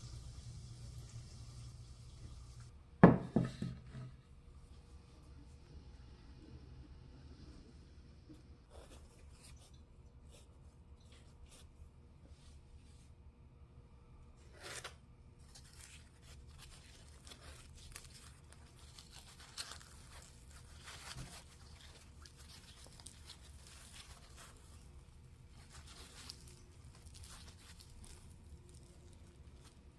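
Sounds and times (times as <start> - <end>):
crusty bread crackling and tearing: 14.4 - 29.9.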